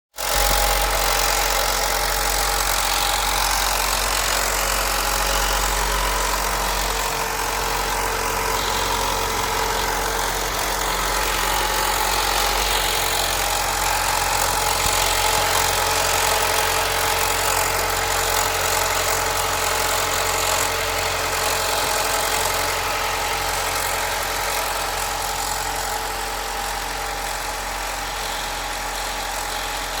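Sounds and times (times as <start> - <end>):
engine rattle: 0.2 - 30.0
car engine idling: 0.5 - 17.6.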